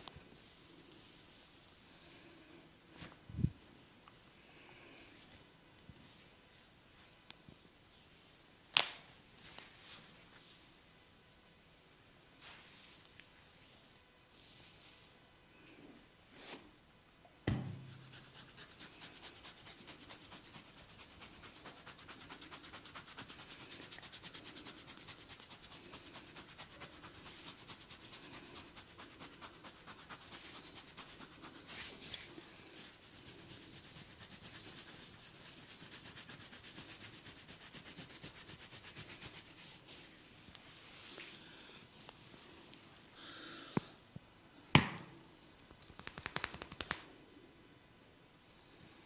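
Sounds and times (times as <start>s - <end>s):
hands rubbing skin and hair: 17.8s - 42.8s, 45.7s - 47.1s.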